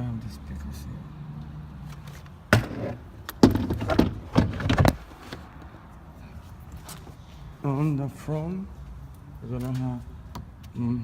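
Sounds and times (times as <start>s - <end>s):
plastic panel clattering and rattling: 2.5s - 5.0s.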